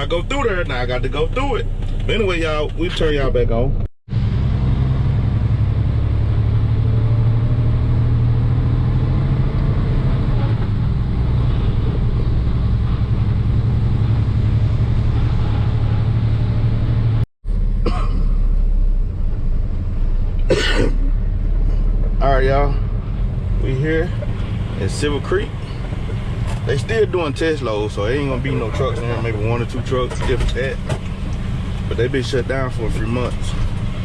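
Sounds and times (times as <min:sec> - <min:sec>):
road noise: 0:00.0 - 0:34.0
truck diesel engine running: 0:10.6 - 0:34.0.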